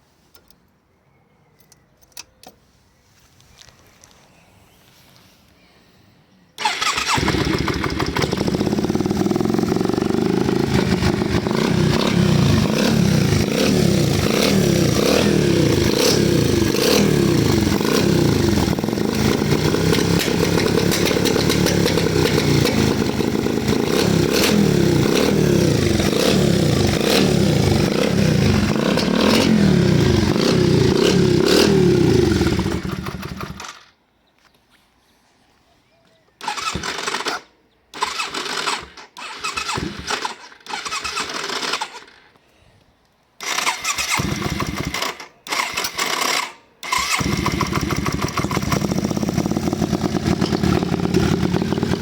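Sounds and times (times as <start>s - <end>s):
motorcycle engine revving roughly: 6.6s - 33.6s, 38.0s - 41.9s, 43.4s - 52.0s.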